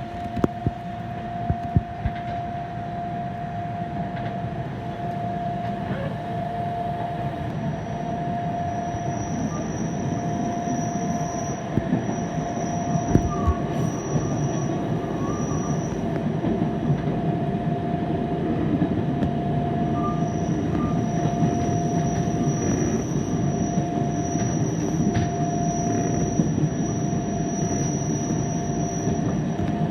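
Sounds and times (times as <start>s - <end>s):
constant whine: 0.0s - 29.9s
wheels rumbling on rail: 0.0s - 29.9s
train clunks: 4.1s - 7.6s
thin high squeal: 9.0s - 16.1s.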